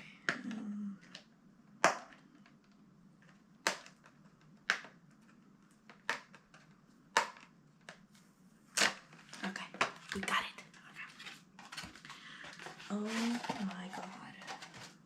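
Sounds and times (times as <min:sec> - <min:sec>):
plastic jar lid clicks and snaps: 0:03.6 - 0:05.0, 0:05.9 - 0:08.0.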